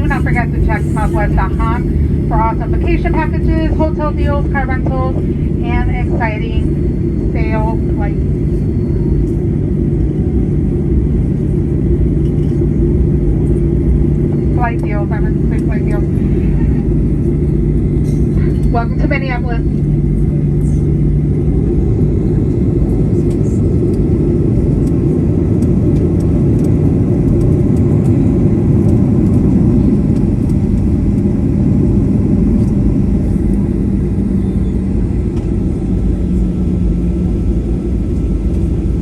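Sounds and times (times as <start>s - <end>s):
low rumble inside aircraft cabin: 0.0s - 39.0s.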